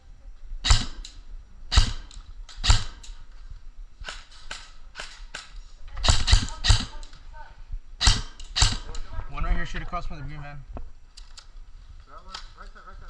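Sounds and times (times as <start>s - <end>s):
airsoft gun shots: 0.6s - 3.2s, 4.0s - 7.0s, 8.0s - 9.0s.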